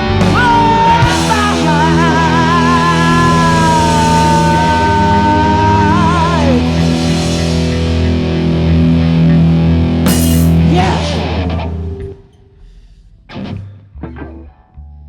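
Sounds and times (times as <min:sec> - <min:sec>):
quiet guitar chords: 0:00.0 - 0:12.6, 0:13.2 - 0:15.0
rock band holding a chord: 0:00.0 - 0:12.8
cymbal crash: 0:10.1 - 0:10.7.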